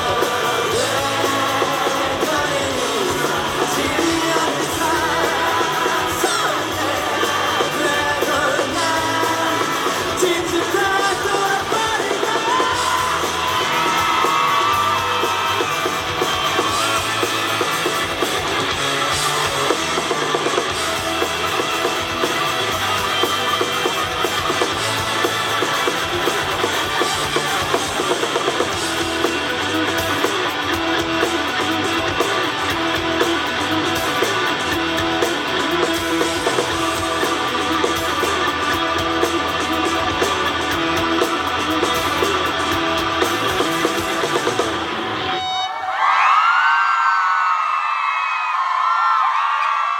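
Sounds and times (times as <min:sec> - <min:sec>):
man singing: 0:00.0 - 0:14.8
drum kit: 0:00.0 - 0:45.6
electric guitars: 0:00.0 - 0:45.9.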